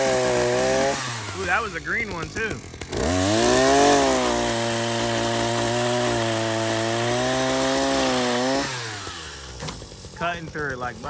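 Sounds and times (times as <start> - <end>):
pole saw engine at high throttle: 0.0 - 11.0
chain cutting tree limb: 2.5 - 10.0.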